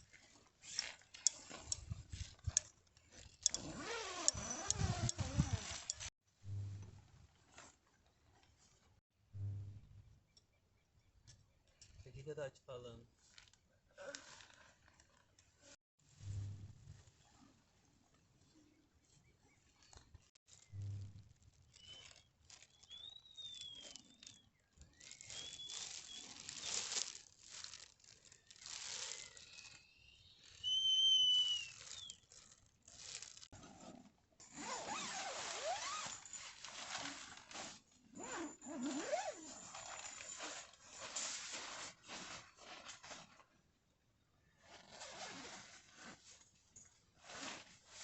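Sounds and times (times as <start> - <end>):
camping gear rustling and crinkling: 0.0 - 6.2, 7.0 - 9.0, 13.1 - 15.8, 16.4 - 43.7, 44.4 - 48.0
short high whistled notes: 29.2 - 32.2.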